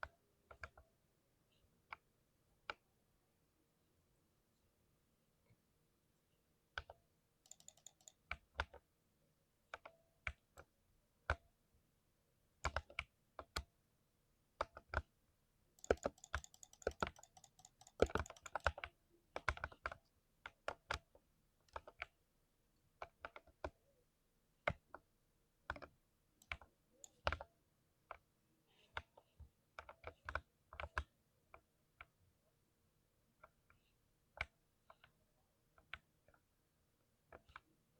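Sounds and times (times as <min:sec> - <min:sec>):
mechanical keyboard typing: 0:06.8 - 0:08.8, 0:15.8 - 0:20.0, 0:25.8 - 0:27.4.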